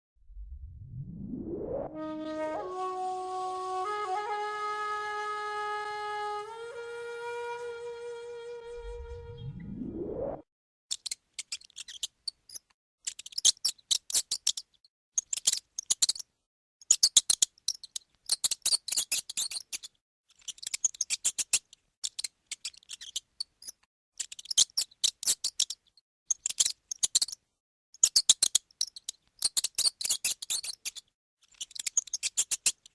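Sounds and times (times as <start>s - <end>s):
rising musical glide: 1.1s - 10.4s
mouse squeaking: 10.9s - 27.4s, 28.0s - 32.9s.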